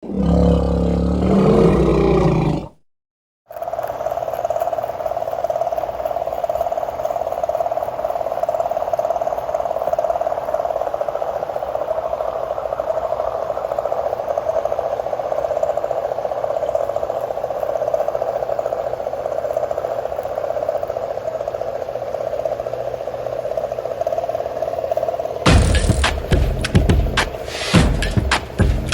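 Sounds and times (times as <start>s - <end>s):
louder sound cutting off: 25.5s - 28.9s.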